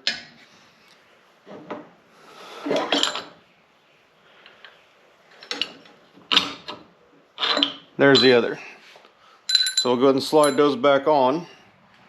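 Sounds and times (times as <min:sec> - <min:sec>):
steel parts clinking and scraping: 0:02.7 - 0:03.4, 0:04.4 - 0:06.8, 0:07.4 - 0:08.6, 0:09.5 - 0:10.7.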